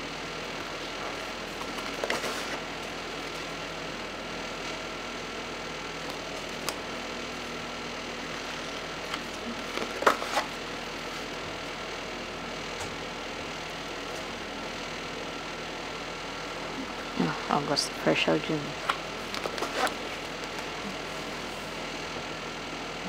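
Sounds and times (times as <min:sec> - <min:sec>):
steady background hum: 0:00.0 - 0:23.0
calendar pages rustling: 0:00.7 - 0:02.6, 0:09.0 - 0:11.3, 0:19.2 - 0:20.8.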